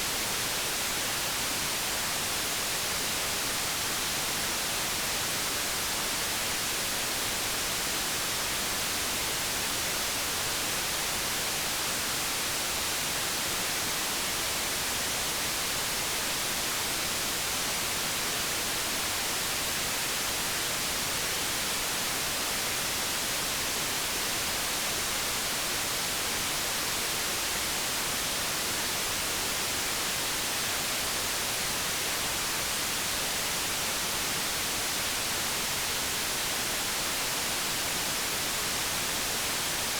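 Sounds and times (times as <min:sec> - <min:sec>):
steady white noise hiss: 0:00.0 - 0:39.9.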